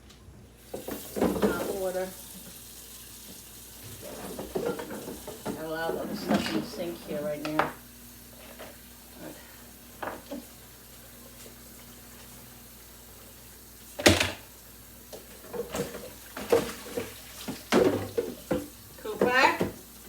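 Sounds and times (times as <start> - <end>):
plastic drawer clattering among dishes: 4.0 - 7.0, 15.4 - 19.8.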